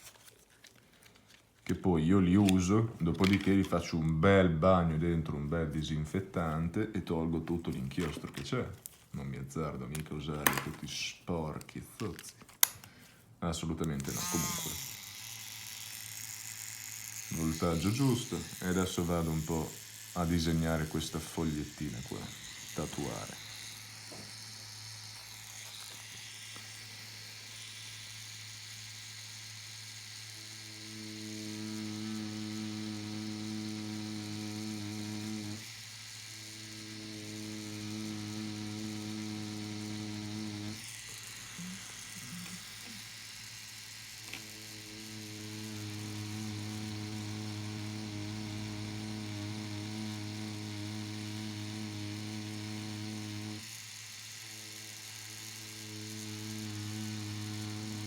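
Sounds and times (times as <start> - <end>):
tattoo machine buzzing: 13.8 - 58.0.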